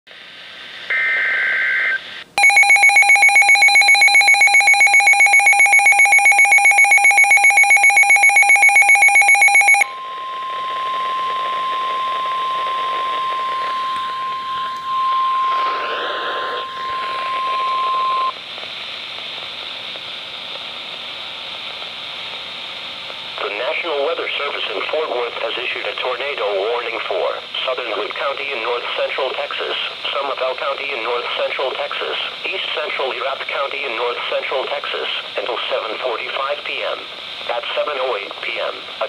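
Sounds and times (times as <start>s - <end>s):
radio static hiss: 0.1s - 2.4s, 10.5s - 39.0s
pulsing electronic alarm beep: 2.4s - 18.3s
steady warning alarm tone: 2.4s - 18.3s.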